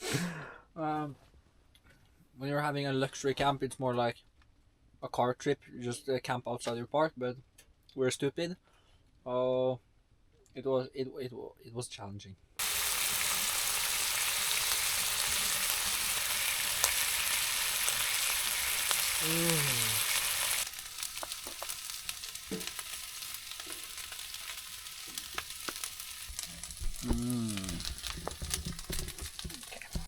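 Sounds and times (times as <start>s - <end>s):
food sizzling in a pan: 12.6s - 30.0s.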